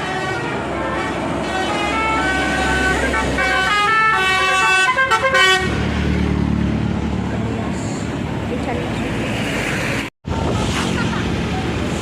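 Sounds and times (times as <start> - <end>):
multi-tone bus horn melody: 0.0 - 6.0
bus engine rumble: 0.0 - 12.0.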